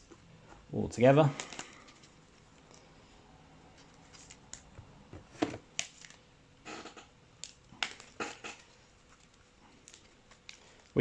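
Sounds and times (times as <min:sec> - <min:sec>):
cards rustling: 0:03.7 - 0:04.7.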